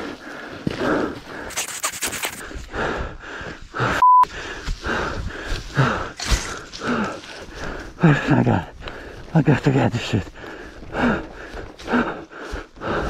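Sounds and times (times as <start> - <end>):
person panting heavily: 0.0 - 13.0
censor beep: 4.0 - 4.3.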